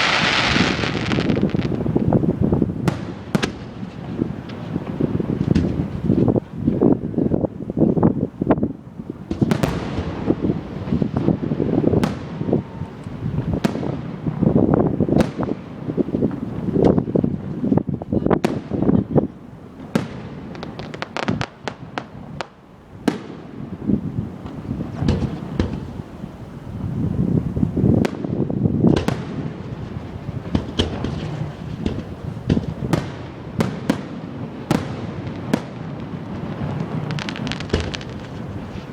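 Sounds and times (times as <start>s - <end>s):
crackling firework pops: 0.0s - 2.2s, 2.8s - 6.9s, 9.2s - 14.2s, 15.1s - 17.8s, 19.8s - 23.6s, 24.4s - 26.0s, 28.0s - 38.9s
firework shells banging: 34.7s - 38.9s.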